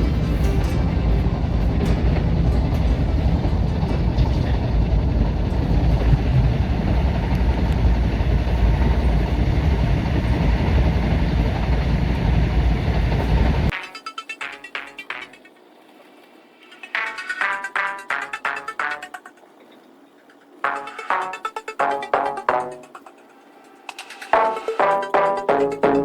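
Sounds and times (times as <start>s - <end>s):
train rumbling on rails: 0.0s - 13.7s.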